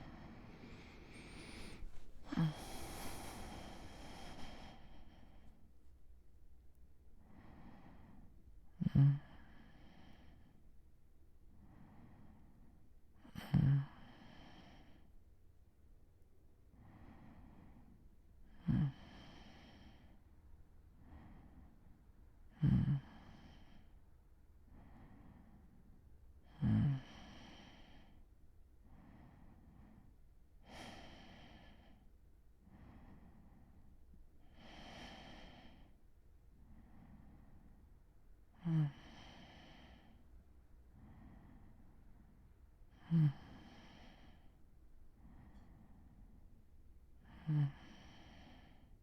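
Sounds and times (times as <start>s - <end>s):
man snoring: 0.0s - 4.9s
man breathing slowly: 0.0s - 5.9s, 7.2s - 10.6s, 26.8s - 33.8s, 34.4s - 37.8s, 38.6s - 42.3s, 42.9s - 46.5s, 47.2s - 49.0s.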